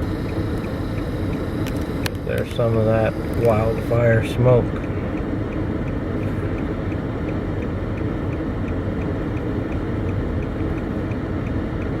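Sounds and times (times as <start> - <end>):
car cabin engine rumble: 0.0 - 12.0.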